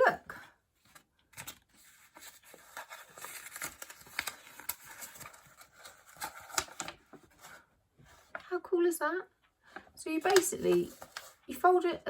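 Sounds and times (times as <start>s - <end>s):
paper envelope rustling: 0.8s - 8.4s, 10.1s - 11.6s.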